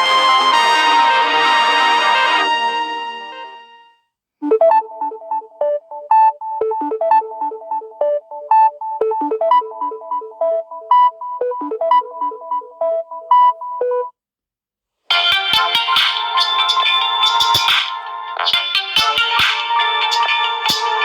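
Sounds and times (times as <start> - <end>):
synthesized ringtone melody: 4.4 - 14.2.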